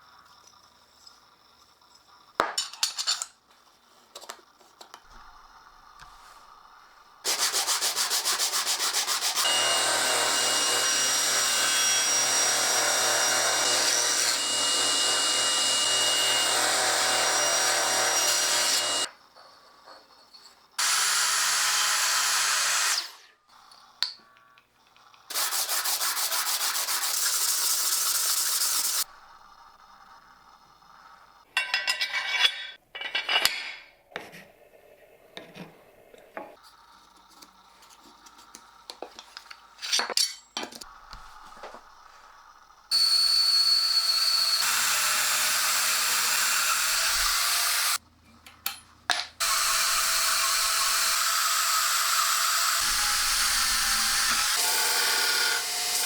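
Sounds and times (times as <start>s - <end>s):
sanding wood rasping: 7.3s - 9.7s, 25.3s - 29.0s.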